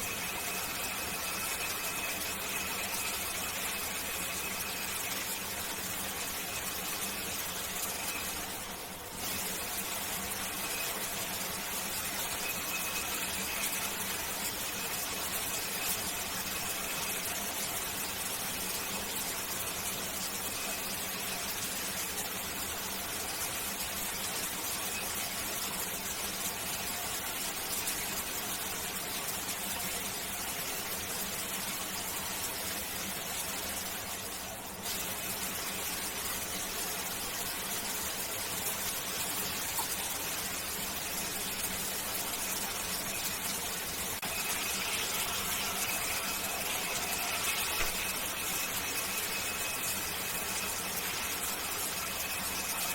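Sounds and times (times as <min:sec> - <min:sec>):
shower spray hissing: 0:34.8 - 0:52.9.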